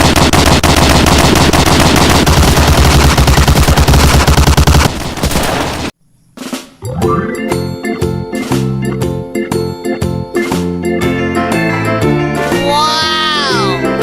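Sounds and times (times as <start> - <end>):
machine-gun fire: 0.0 - 6.0.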